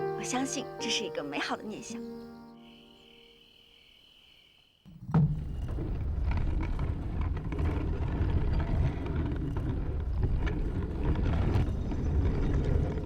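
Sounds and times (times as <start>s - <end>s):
faint crackles: 5.2s - 13.0s.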